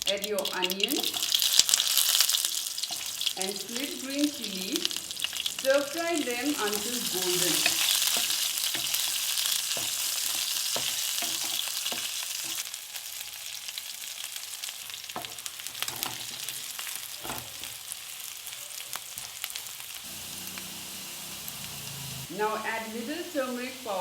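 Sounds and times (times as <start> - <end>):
onions sizzling in hot oil: 0.0 - 24.0
spatula scraping and tapping pan: 6.7 - 12.6, 15.2 - 16.6.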